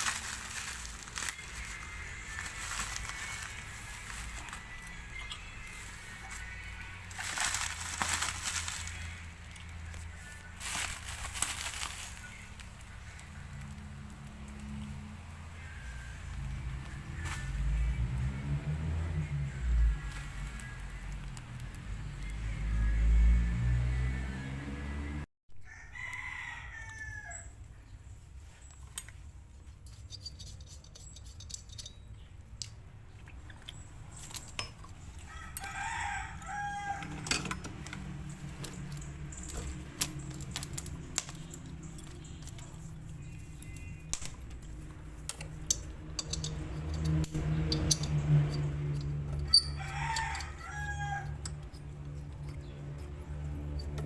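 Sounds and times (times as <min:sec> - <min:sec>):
sharp clicks and knocks: 0:37.0 - 0:50.6.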